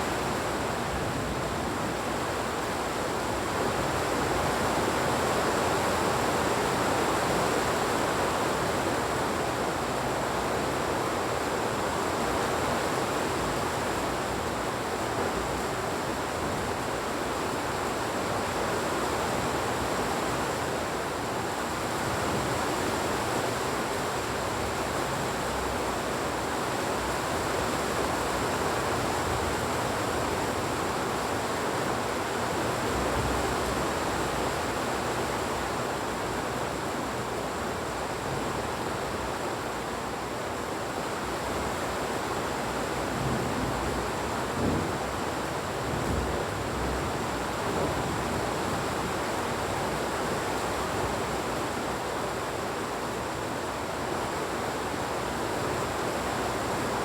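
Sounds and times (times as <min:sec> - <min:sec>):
heavy rain falling: 0:00.1 - 0:57.0.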